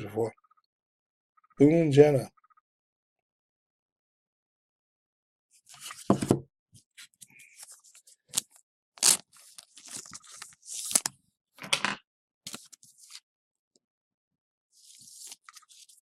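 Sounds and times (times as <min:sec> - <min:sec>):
wrapper crinkling and tearing: 0:08.3 - 0:11.1.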